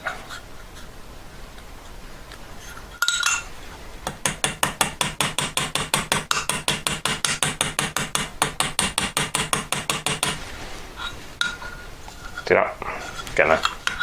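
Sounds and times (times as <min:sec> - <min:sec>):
metal clink: 0:03.0 - 0:03.5.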